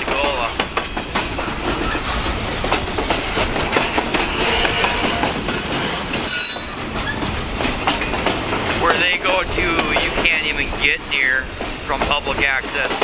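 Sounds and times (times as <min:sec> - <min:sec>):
train wheels clacking over rail: 0:00.0 - 0:13.0
high-pitched wheel squeal: 0:06.2 - 0:07.2.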